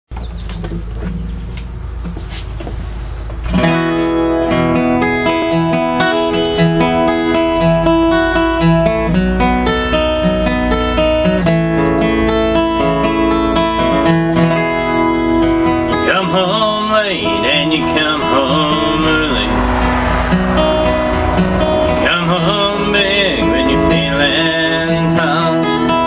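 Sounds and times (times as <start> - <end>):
acoustic guitar strummed and picked: 0.3 - 26.0
low rumble: 5.4 - 11.4, 17.2 - 25.0.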